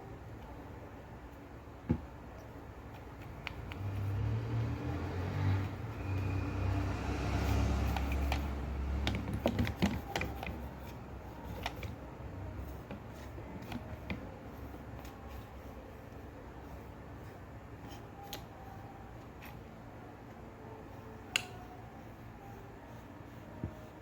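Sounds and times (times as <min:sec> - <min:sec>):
electric fan motor humming: 0:00.0 - 0:24.0
plastic parts clicking and knocking: 0:09.0 - 0:10.6.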